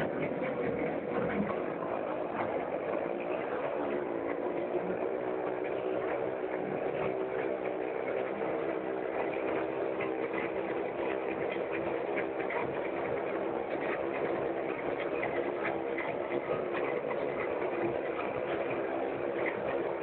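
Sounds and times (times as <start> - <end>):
motorcycle engines running: 0.0 - 20.0.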